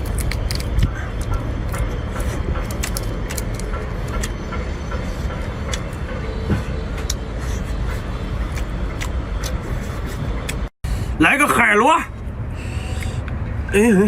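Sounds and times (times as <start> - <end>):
shell cracking and chewing: 0.0 - 4.4
steady low rumble: 0.0 - 14.0.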